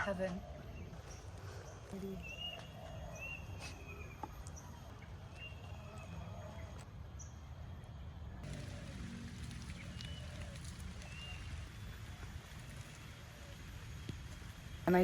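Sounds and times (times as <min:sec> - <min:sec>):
low outdoor rumble: 0:04.6 - 0:15.0
birds whistling: 0:08.4 - 0:15.0.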